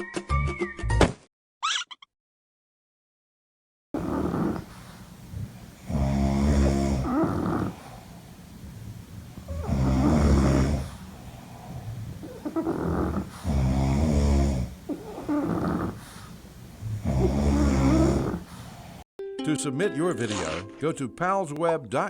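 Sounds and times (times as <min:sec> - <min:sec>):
people snoring: 0:04.0 - 0:19.0.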